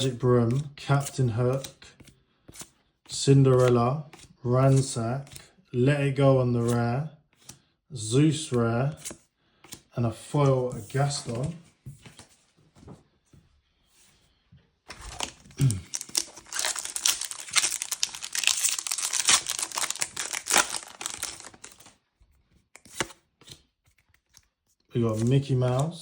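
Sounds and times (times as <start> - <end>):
handling noises: 14.9 - 21.9
wrapper tearing and crinkling: 14.9 - 21.9
dense crackling: 15.1 - 21.9.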